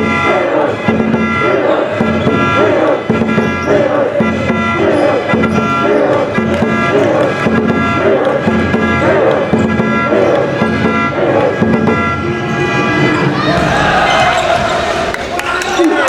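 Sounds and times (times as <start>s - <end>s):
voices chanting: 0.0s - 16.0s.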